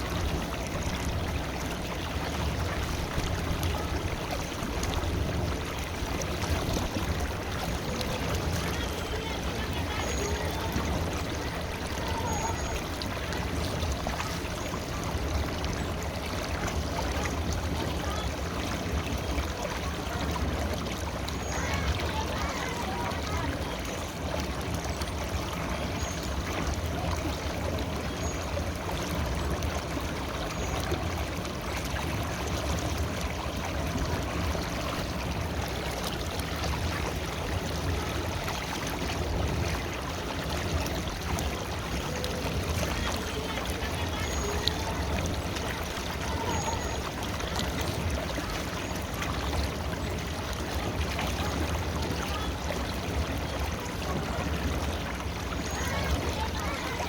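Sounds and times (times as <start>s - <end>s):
river water flowing over rocks: 0.0s - 57.0s.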